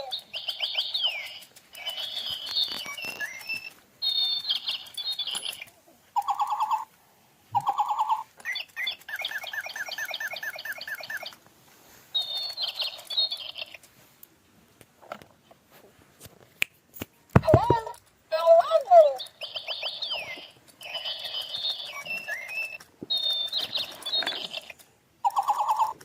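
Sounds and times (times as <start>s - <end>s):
toy bird electronic chirping: 0.0s - 6.9s, 7.6s - 11.4s, 12.1s - 13.8s, 18.4s - 26.0s.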